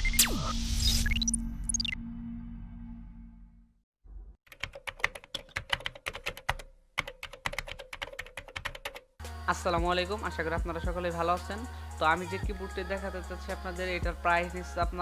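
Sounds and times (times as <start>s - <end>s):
fast keyboard typing: 4.5s - 9.1s
music: 9.2s - 15.0s.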